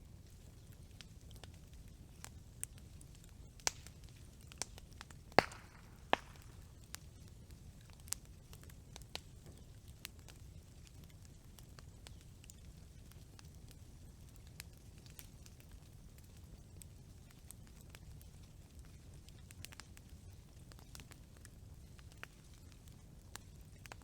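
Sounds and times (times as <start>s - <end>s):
campfire flames rumbling: 0.0s - 24.0s
fire crackling and popping: 0.0s - 24.0s.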